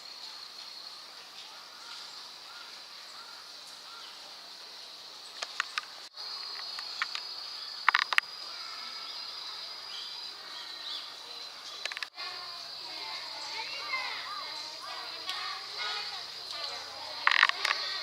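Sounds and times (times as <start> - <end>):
sharp clicks: 5.4 - 5.9, 6.6 - 8.3, 11.8 - 12.1, 17.2 - 18.0
high-pitched insect trilling: 5.4 - 18.0.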